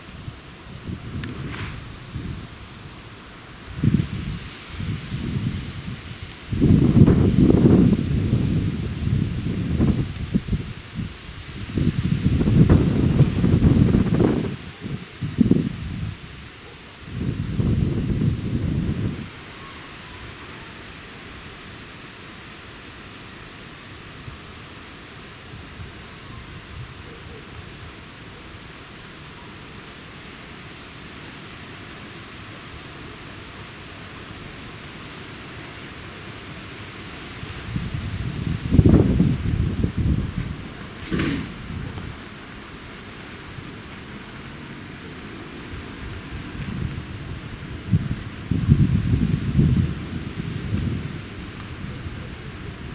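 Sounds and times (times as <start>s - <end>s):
wind gusting against microphone: 0.0s - 20.7s, 37.1s - 52.9s
background hiss: 0.0s - 52.9s
insects chirring: 0.0s - 52.9s.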